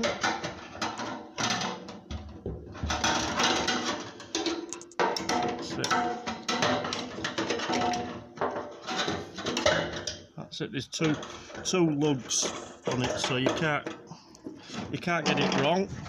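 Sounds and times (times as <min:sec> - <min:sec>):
metallic rattling and scraping: 0:00.0 - 0:16.0
metal clinking on metal: 0:03.0 - 0:10.3.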